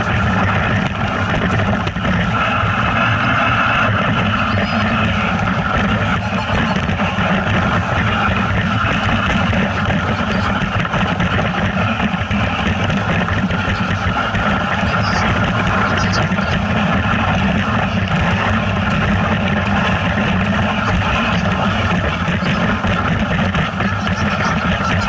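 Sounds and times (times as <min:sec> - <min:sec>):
vehicle engine running: 0:00.0 - 0:25.0.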